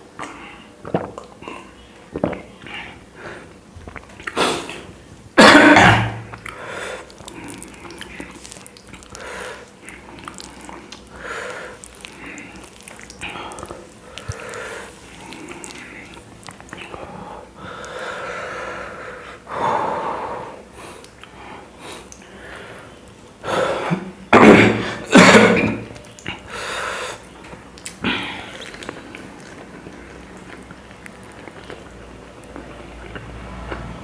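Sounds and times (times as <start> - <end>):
man eating: 0.0 - 5.3, 5.9 - 18.8, 20.7 - 34.0
man breathing hard: 17.0 - 24.0.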